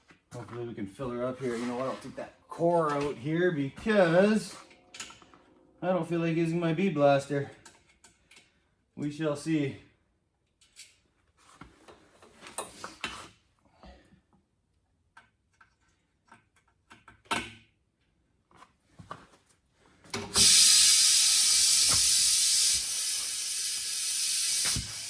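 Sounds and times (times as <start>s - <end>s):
compressed air hissing into tire: 20.3s - 25.0s.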